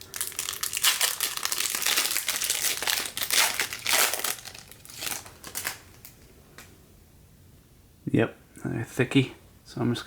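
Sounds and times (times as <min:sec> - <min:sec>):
packaging crinkling: 0:00.0 - 0:06.7.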